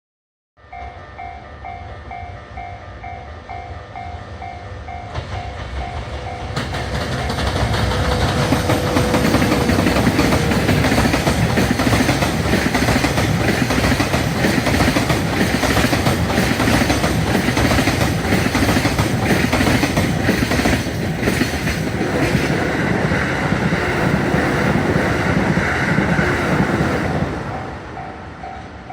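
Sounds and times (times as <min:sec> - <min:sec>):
level-crossing warning bell: 0:00.6 - 0:14.5, 0:26.2 - 0:28.9
freight train rumble: 0:00.6 - 0:28.9.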